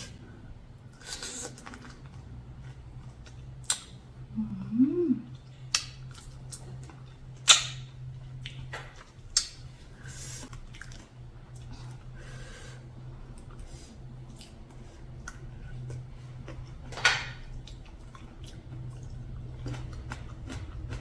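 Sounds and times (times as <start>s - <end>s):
person humming: 4.3s - 5.4s.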